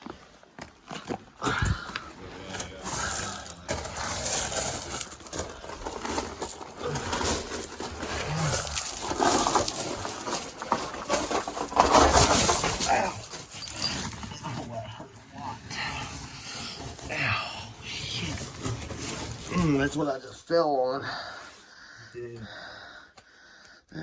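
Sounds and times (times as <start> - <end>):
footsteps crunching on gravel: 0.0 - 12.1
low grunts: 1.4 - 4.5, 6.7 - 10.2.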